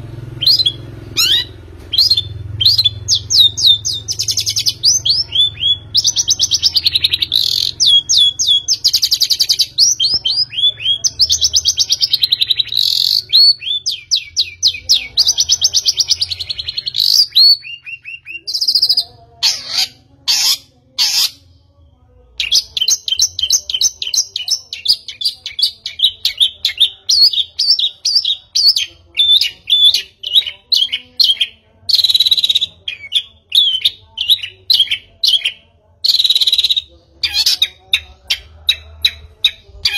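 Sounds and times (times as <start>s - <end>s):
small bird singing: 0.0s - 39.9s.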